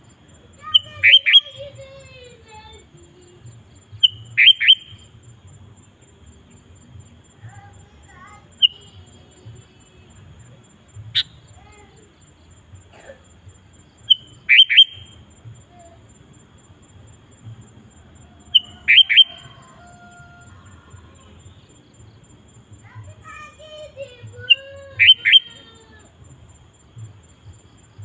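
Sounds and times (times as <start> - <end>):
bulbul calling: 0.5 - 5.3, 7.4 - 16.2, 17.3 - 26.0.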